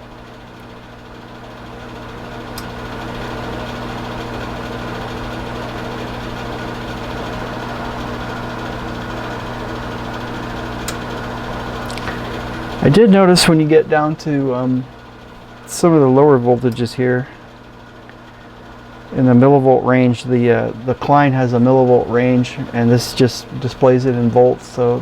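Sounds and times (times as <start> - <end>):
power supply electrical hum: 0.0 - 25.0.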